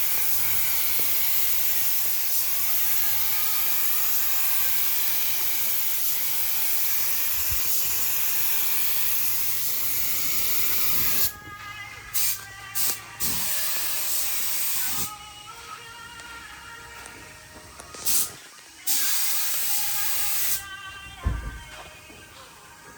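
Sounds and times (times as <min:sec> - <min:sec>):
compressed air hissing: 0:00.0 - 0:11.4, 0:12.1 - 0:15.2, 0:17.9 - 0:21.7.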